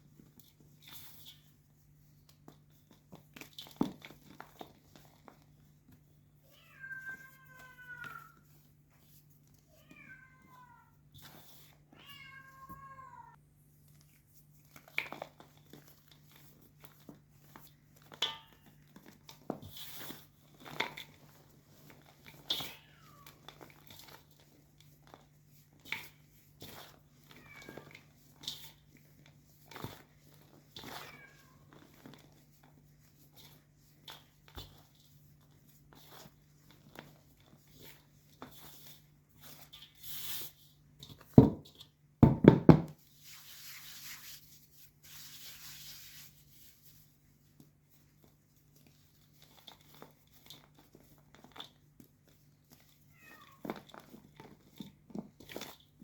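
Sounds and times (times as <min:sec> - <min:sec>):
cat meowing: 0:06.5 - 0:08.4, 0:09.7 - 0:11.0, 0:12.0 - 0:13.4, 0:53.1 - 0:53.6.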